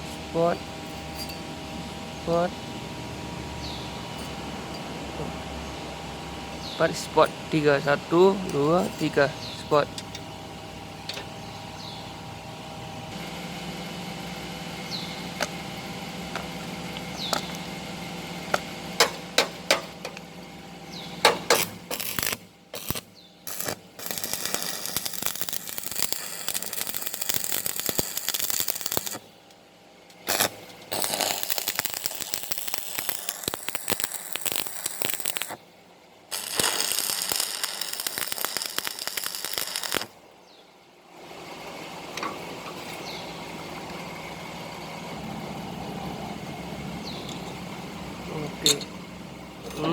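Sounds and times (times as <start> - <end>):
steady hum: 0.0 - 49.9
welding arc crackling: 21.2 - 29.4, 30.1 - 35.7, 36.3 - 40.2.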